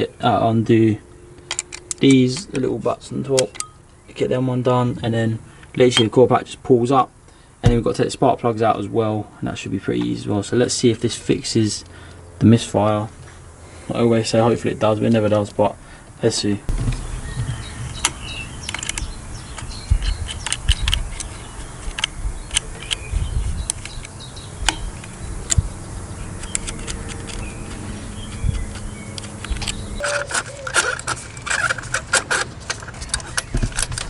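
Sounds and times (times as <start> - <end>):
socket wrench clicking: 17.9 - 23.0, 26.4 - 34.0.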